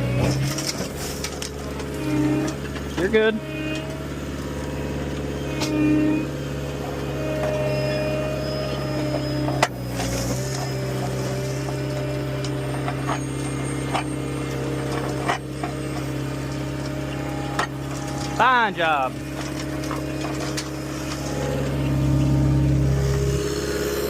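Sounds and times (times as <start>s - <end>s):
engine running steadily: 0.0s - 24.0s.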